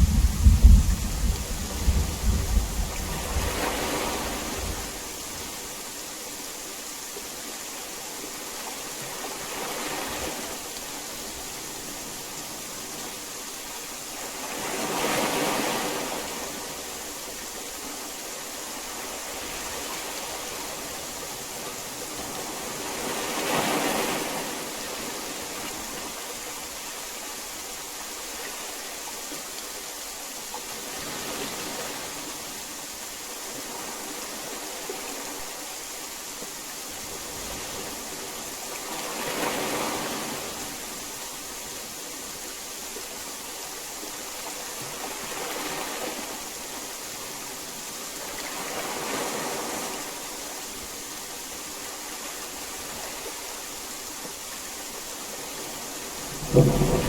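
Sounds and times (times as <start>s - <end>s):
thunder rumble: 0.0s - 5.0s, 56.2s - 57.0s
heavy rain: 0.0s - 57.0s.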